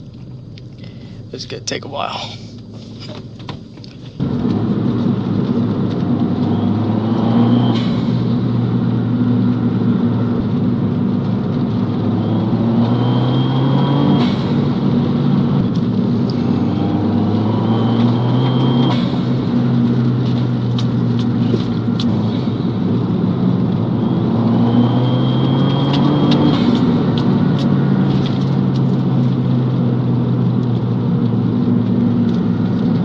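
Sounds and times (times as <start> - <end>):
car engine cruising: 0.0 - 33.0
turbo whistle: 17.6 - 19.3, 24.0 - 27.0.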